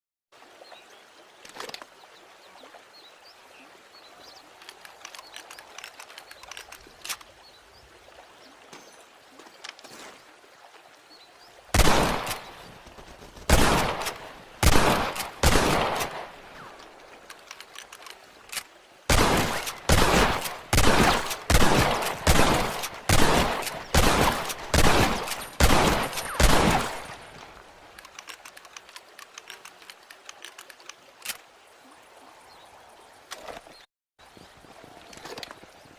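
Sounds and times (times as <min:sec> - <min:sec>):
rifle gunshots: 0:11.8 - 0:12.6, 0:13.5 - 0:16.4, 0:19.1 - 0:27.2.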